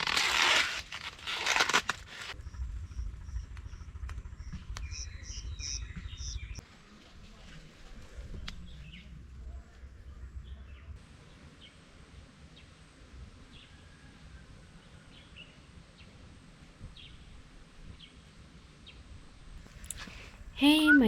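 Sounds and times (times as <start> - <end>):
birds chirping: 19.8 - 21.0.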